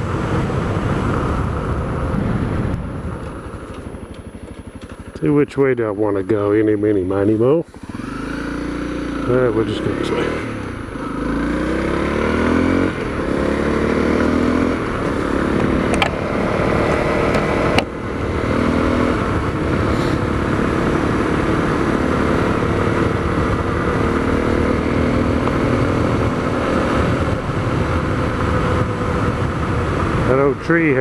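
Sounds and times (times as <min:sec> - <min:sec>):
motorcycle engine pulling away: 0:07.1 - 0:31.0.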